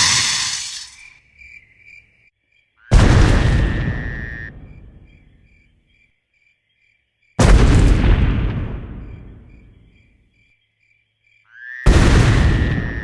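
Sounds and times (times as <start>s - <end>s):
cricket chirping: 0.0s - 2.9s, 3.7s - 7.4s, 9.0s - 11.8s.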